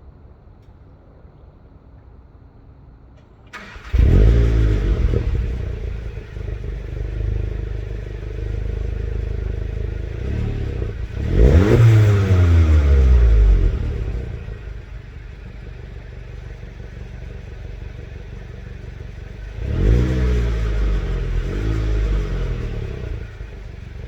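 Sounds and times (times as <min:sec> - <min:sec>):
click: 0:00.6 - 0:00.8
car engine starting and idling: 0:03.2 - 0:24.0
engine revving: 0:03.6 - 0:15.7, 0:18.4 - 0:24.0.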